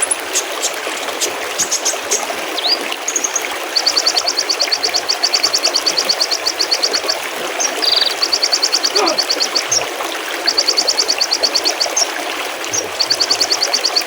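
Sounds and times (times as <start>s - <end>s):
stream babbling: 0.0s - 14.0s
songbird trilling: 1.6s - 14.0s
buzzy bird call: 3.8s - 9.8s.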